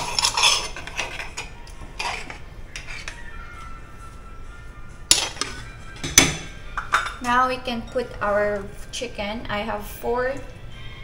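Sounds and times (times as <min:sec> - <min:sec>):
utensil stirring liquid in bowl: 0:00.0 - 0:01.4.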